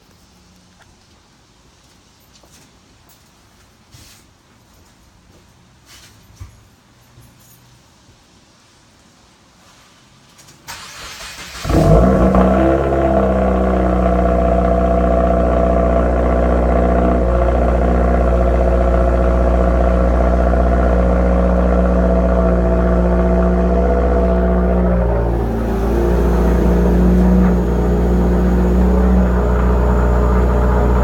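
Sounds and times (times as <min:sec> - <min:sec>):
car engine loud high idle: 0:11.6 - 0:31.0.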